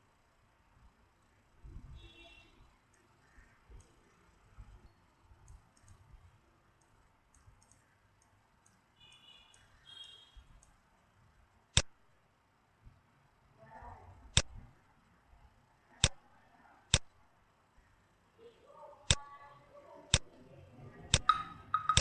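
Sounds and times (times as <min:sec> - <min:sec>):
computer mouse clicking: 0:02.9 - 0:04.2, 0:05.4 - 0:06.2, 0:06.8 - 0:09.7, 0:10.5 - 0:10.8, 0:14.3 - 0:14.6, 0:16.0 - 0:16.2, 0:16.9 - 0:17.1, 0:21.1 - 0:22.0.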